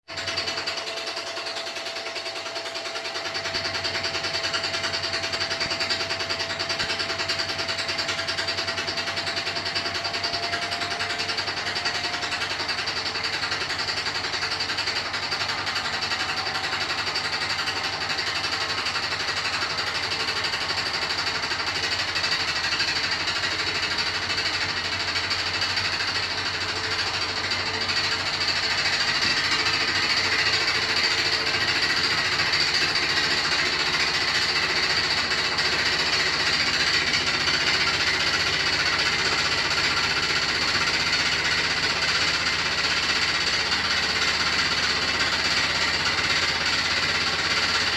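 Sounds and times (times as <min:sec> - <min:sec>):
washing machine rattling: 0:00.1 - 0:47.9.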